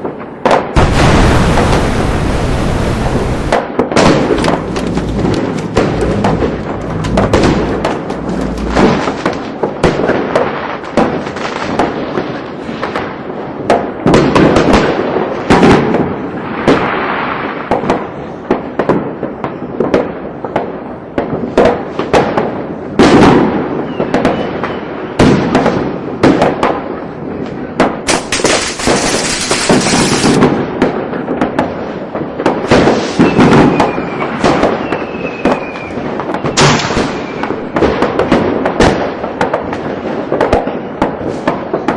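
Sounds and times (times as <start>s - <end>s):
firecrackers crackling and popping: 0.0s - 41.9s
heavy firework bangs: 0.0s - 41.9s
loud hiss: 28.1s - 30.4s
faint falling whistles: 33.1s - 37.6s.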